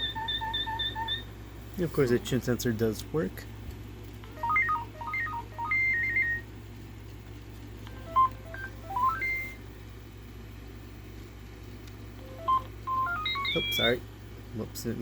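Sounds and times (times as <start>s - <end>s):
robot dog beep melodies: 0.0s - 1.3s, 4.4s - 6.4s, 8.0s - 9.6s, 12.3s - 14.0s.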